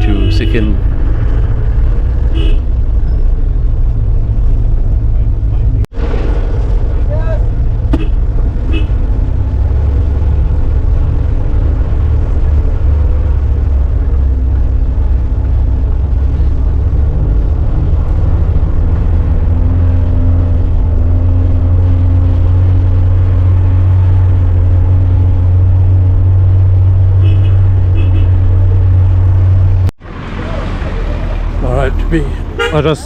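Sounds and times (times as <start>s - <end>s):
car horn beeps: 0.0s - 1.0s, 2.3s - 2.7s, 27.2s - 28.4s, 32.5s - 33.0s
car engine and road noise: 0.0s - 33.0s.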